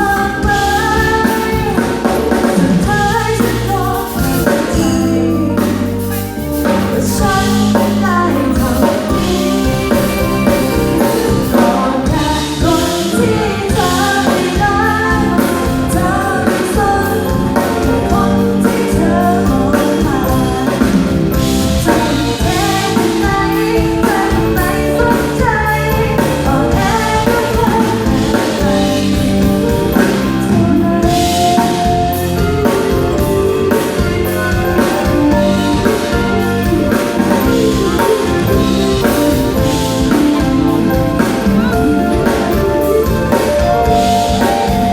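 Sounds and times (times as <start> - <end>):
drum-kit beat: 0.0 - 44.9
woman singing: 0.0 - 44.9.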